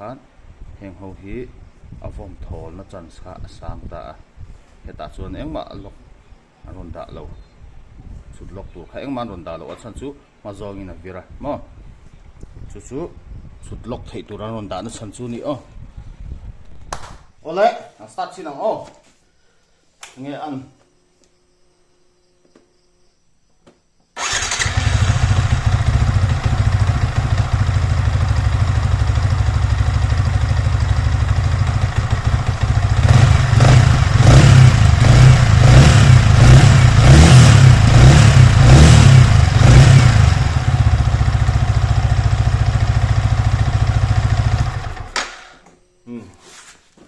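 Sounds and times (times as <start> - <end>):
motorcycle engine idling: 24.2 - 45.1
motorcycle engine revving: 24.2 - 45.2.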